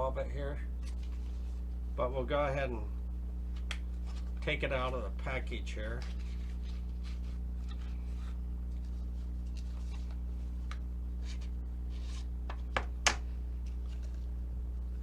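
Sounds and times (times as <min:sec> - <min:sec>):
steady low hum: 0:00.0 - 0:15.0
cardboard package rustling: 0:05.9 - 0:12.3.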